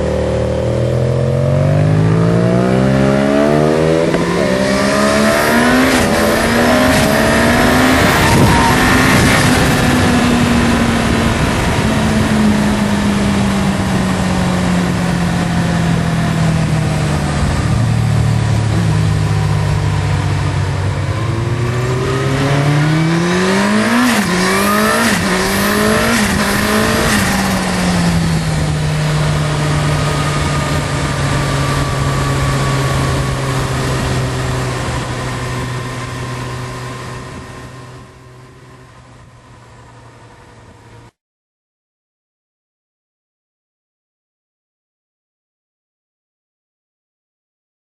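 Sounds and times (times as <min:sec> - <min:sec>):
high-performance engine revving: 0:00.0 - 0:41.2.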